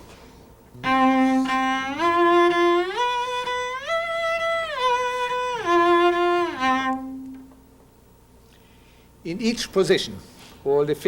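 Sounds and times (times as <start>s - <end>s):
cello long bowed notes: 0.8s - 7.6s.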